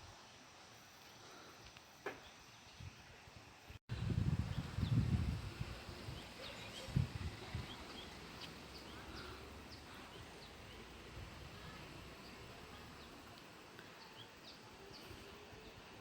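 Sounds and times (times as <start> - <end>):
birds chirping: 4.0 - 16.0.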